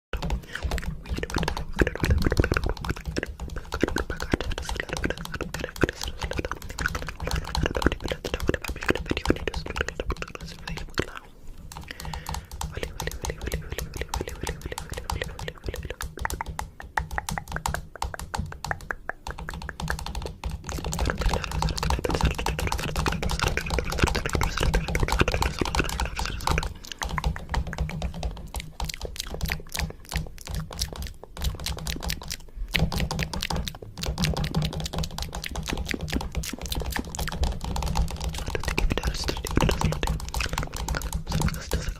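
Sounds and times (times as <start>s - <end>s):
rapid clicking and tapping: 0.1s - 41.9s
steady low hum: 0.2s - 41.9s.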